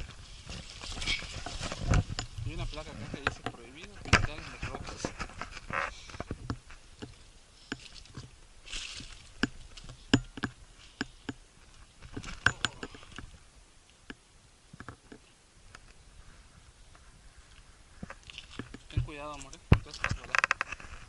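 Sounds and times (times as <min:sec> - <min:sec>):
footsteps on loose stones: 0:00.0 - 0:13.3, 0:18.0 - 0:21.0.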